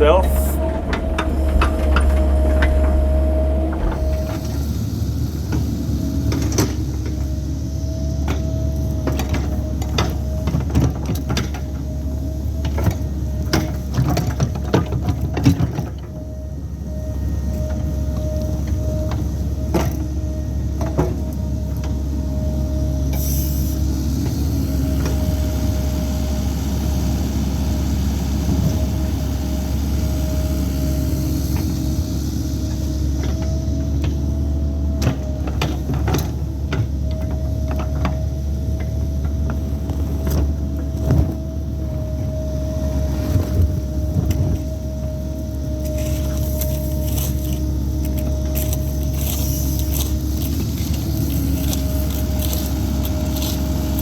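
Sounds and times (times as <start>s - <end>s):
bucket clanking and scraping: 0.0s - 4.7s
excavator diesel engine whining: 0.0s - 54.0s.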